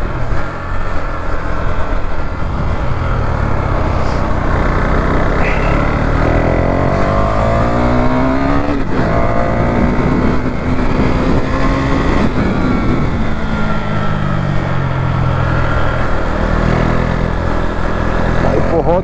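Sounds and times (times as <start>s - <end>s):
motorcycle engine revving through gears: 0.0s - 19.0s
wind rushing: 1.4s - 14.5s.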